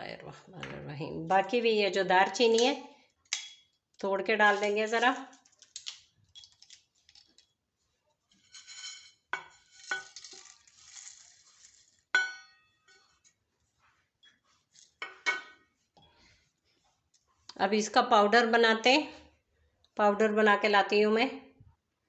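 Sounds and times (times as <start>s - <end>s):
cinnamon sticks clinking in jar: 4.4s - 7.5s, 8.5s - 13.1s
soft rustling: 6.9s - 12.1s.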